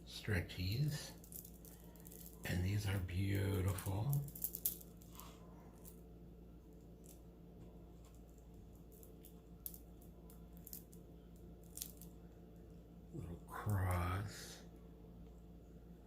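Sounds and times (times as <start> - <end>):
low steady hum: 0.0 - 16.0
beaded bracelets clicking: 4.2 - 5.0.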